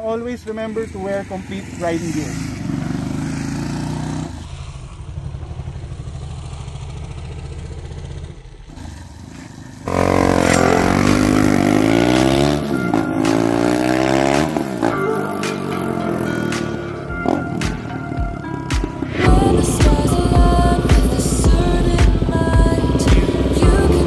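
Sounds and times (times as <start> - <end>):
motorcycle engine idling: 5.0 - 13.2, 17.2 - 24.0
loud music: 9.9 - 24.0.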